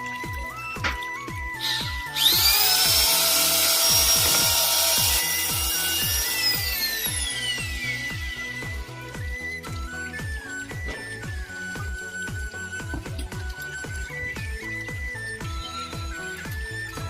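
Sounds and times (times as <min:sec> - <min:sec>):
background music with steady beat: 0:00.0 - 0:17.0
power tool motor whining: 0:01.6 - 0:10.1.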